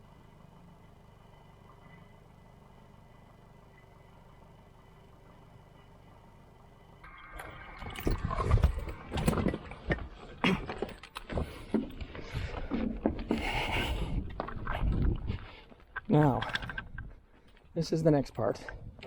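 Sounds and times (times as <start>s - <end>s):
handling knocks and scraping: 7.9s - 19.0s.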